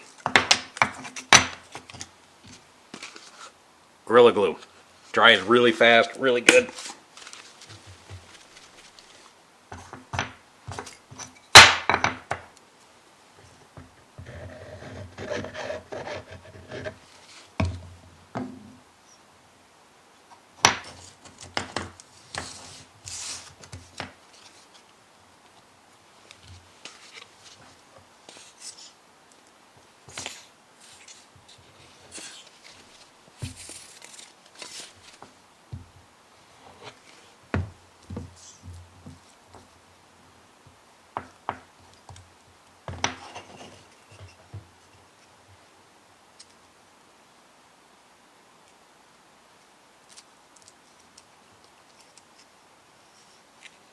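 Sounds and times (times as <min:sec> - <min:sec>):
sharp wooden knocks: 0:11.6 - 0:12.5.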